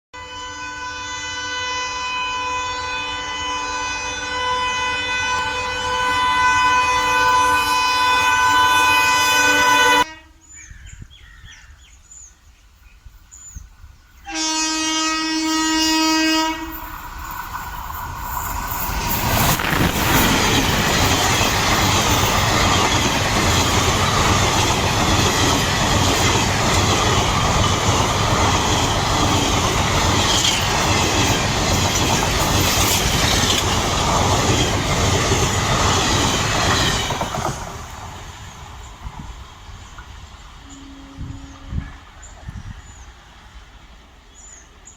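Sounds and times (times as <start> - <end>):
train horn blast: 0.2 - 10.6, 14.2 - 16.9, 40.6 - 42.2
train wheels clattering on rails: 16.6 - 40.2.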